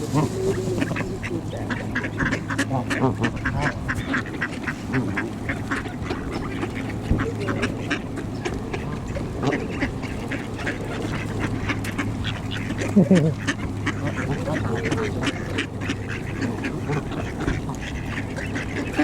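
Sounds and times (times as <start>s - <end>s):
ducks quacking: 0.0s - 19.0s.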